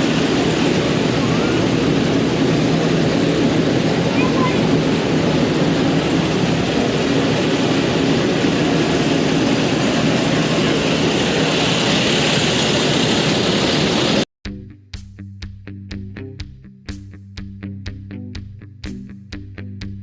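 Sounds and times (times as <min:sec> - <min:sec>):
loud machinery humming: 0:00.0 - 0:14.2
plucked guitar music: 0:14.4 - 0:20.0.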